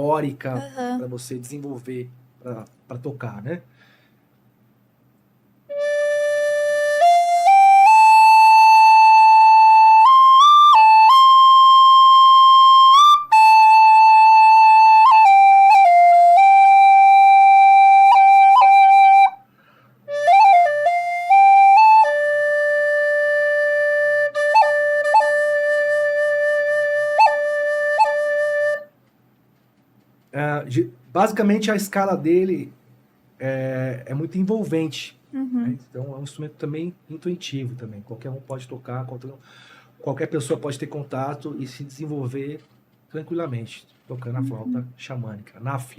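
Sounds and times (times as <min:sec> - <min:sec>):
flute playing slow melody: 0:05.7 - 0:19.5, 0:20.1 - 0:29.0, 0:44.4 - 0:44.9.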